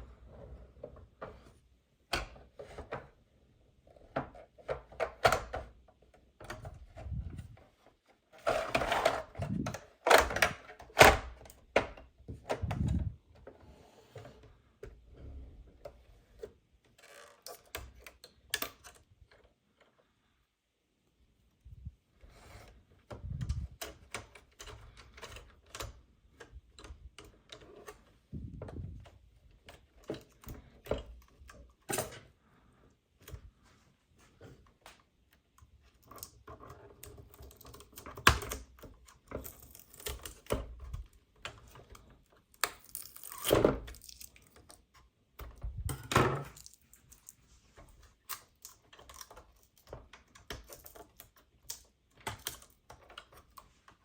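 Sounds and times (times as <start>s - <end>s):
plastic toy parts rattling: 35.9s - 44.9s, 45.6s - 54.0s.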